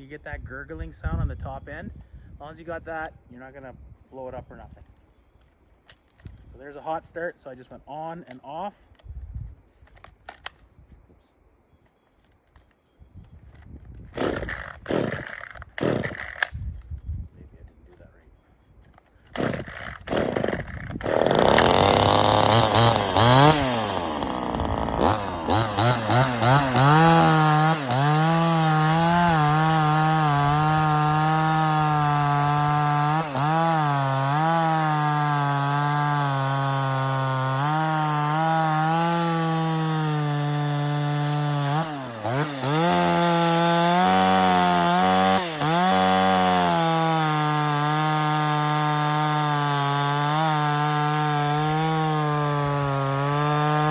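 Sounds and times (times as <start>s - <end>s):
chainsaw revving and cutting wood: 14.2s - 16.5s, 19.3s - 53.9s.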